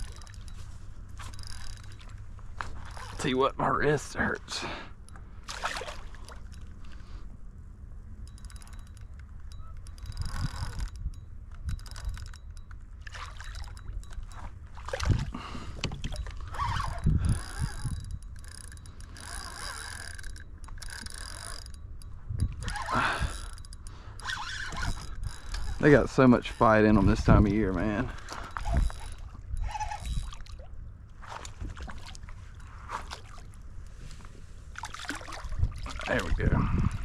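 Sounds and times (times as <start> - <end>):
steady low rumble: 0.0 - 37.0
water splashing around a kayak: 5.3 - 7.1, 13.0 - 17.8, 25.8 - 37.0.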